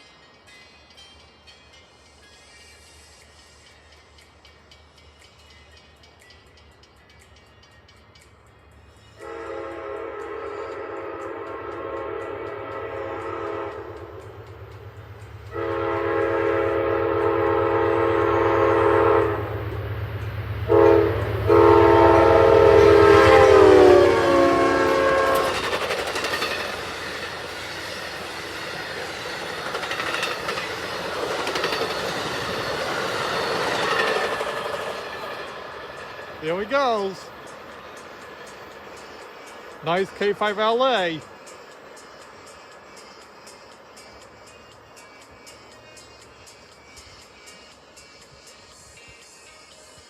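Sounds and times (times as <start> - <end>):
locomotive air horn chord: 9.2 - 14.4, 15.5 - 19.7, 20.6 - 28.0
train cars clattering on rails: 19.2 - 43.9.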